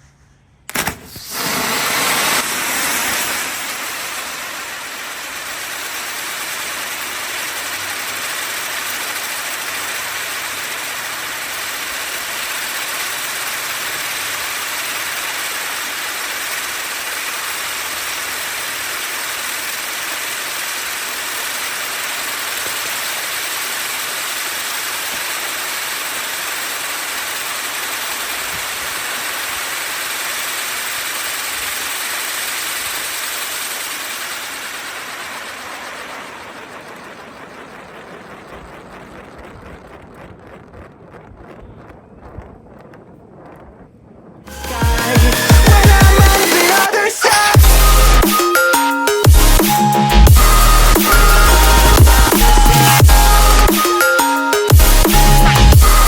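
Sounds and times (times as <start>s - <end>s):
loud rushing hiss of fireworks: 0.7s - 43.5s, 44.4s - 56.0s
firework fountain whoosh: 0.7s - 56.0s.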